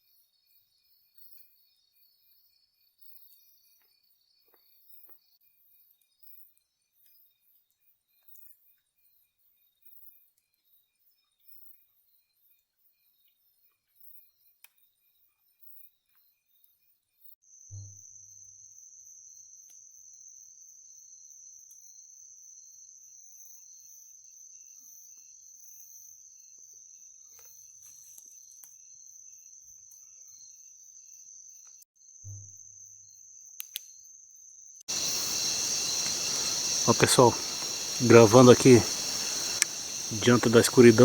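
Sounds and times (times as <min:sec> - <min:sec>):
cricket trilling: 0:34.9 - 0:41.0
loud hiss: 0:34.9 - 0:41.0.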